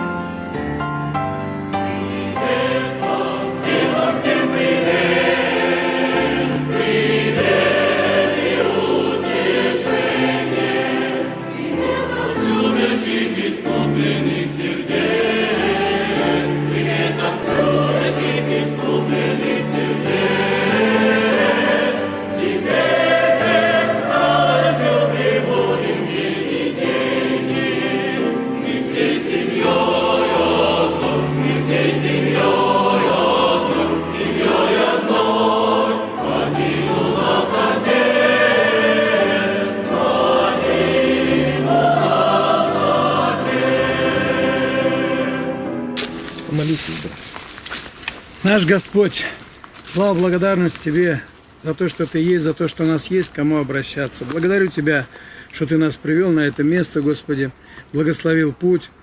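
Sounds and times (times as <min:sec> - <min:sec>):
choir singing a hymn: 0:01.1 - 0:47.5.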